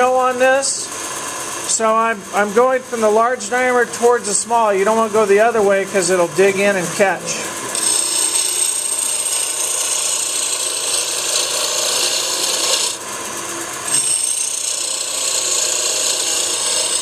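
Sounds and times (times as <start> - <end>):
lathe running: 0.0 - 17.0
gouge cutting wood on lathe: 7.6 - 13.0, 13.8 - 17.0.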